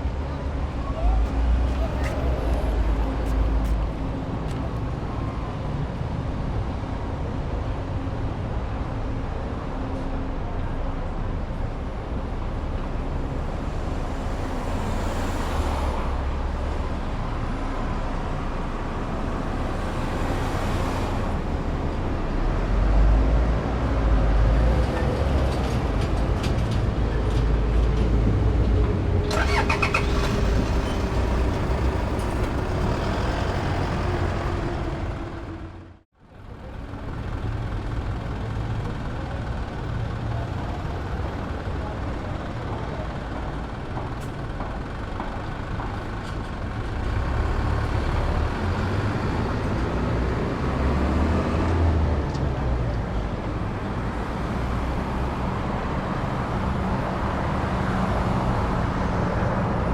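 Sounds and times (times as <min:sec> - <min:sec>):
traffic rumble: 0:00.0 - 0:59.9
vehicles passing: 0:00.0 - 0:59.9.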